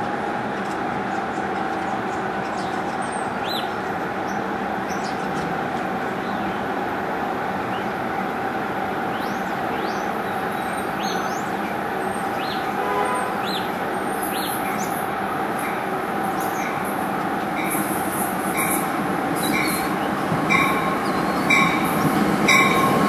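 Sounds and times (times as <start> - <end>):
train rumble and hum: 0.0 - 23.0.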